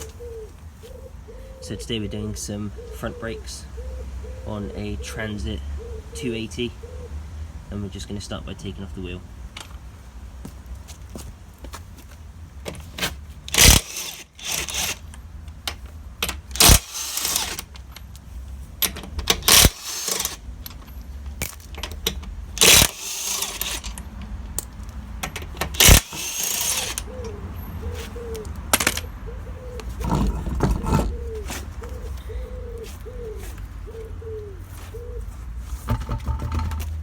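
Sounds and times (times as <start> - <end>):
impact wrench loosening wheel nuts: 12.7 - 18.2, 18.8 - 29.1, 29.8 - 31.6, 35.9 - 37.0.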